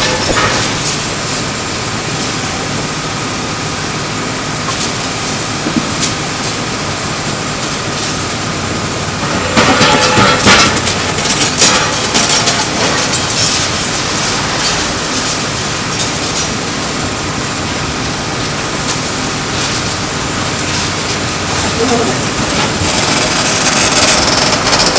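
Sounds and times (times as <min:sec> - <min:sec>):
loud crashing and clattering: 0:00.0 - 0:03.6, 0:04.5 - 0:24.9
bulldozer engine running: 0:00.0 - 0:24.9.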